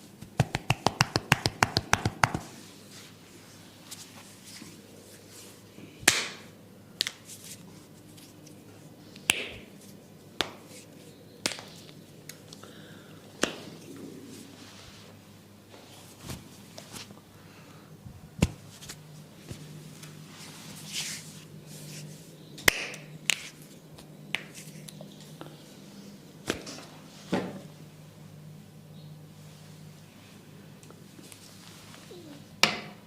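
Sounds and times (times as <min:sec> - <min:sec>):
faint steady hum: 0:00.0 - 0:33.0
hands slapping and snapping: 0:00.2 - 0:02.5, 0:06.0 - 0:07.3, 0:09.1 - 0:09.8, 0:10.4 - 0:12.6, 0:13.4 - 0:13.8, 0:22.6 - 0:25.0.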